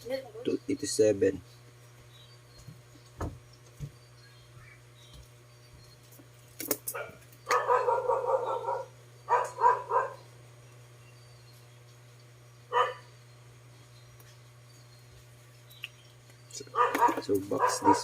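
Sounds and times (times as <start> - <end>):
steady low hum: 0.0 - 18.0
dog barking: 6.9 - 10.3, 12.7 - 13.1, 16.7 - 18.0.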